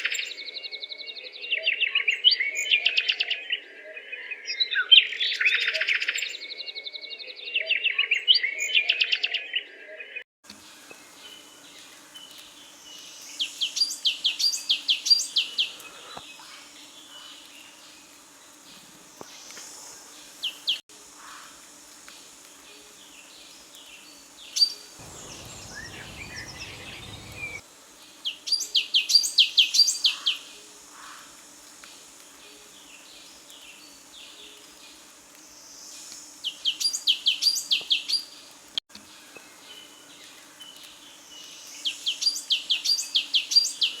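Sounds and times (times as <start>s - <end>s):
bird singing down-slurred notes: 25.0s - 27.6s
low rumbling noise: 25.0s - 27.6s.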